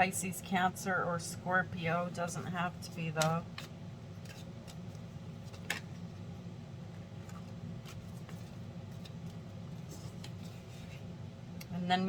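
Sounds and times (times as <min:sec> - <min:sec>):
steady low hum: 0:00.0 - 0:12.0
cards clicking and rustling: 0:03.0 - 0:06.0, 0:07.2 - 0:11.1.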